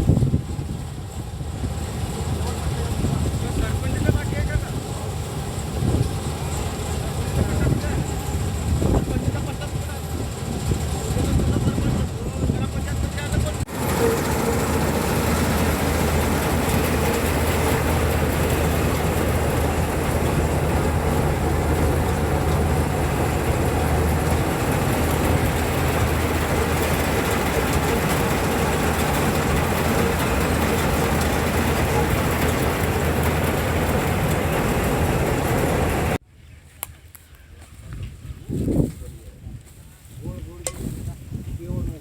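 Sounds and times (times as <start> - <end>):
combine harvester engine hum: 0.0 - 36.2
cutting and threshing machinery: 13.4 - 36.2.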